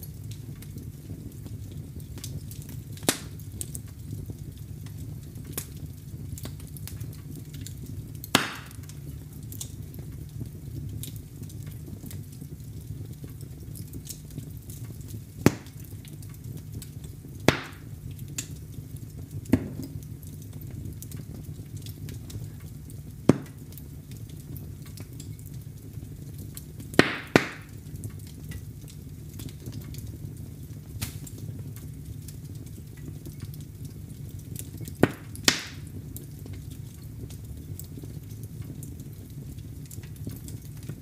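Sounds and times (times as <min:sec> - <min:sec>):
fire crackling pops: 0:00.0 - 0:41.0
fire rumbling in fireplace: 0:00.0 - 0:41.0.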